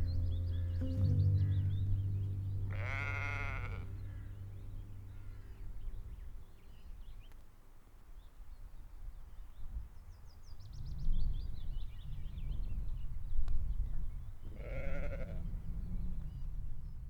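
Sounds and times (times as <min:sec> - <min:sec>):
low rumble: 0:00.0 - 0:06.8
sheep bleating: 0:02.7 - 0:04.3, 0:14.6 - 0:15.4.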